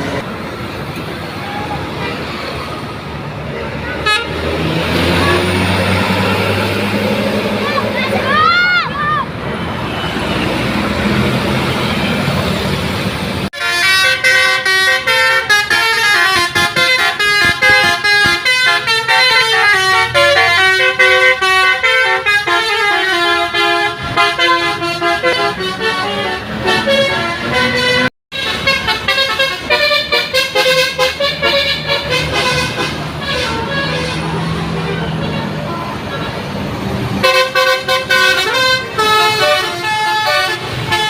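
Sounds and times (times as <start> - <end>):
multi-tone musical bus horn: 3.5 - 7.1, 13.5 - 36.4, 37.2 - 41.0.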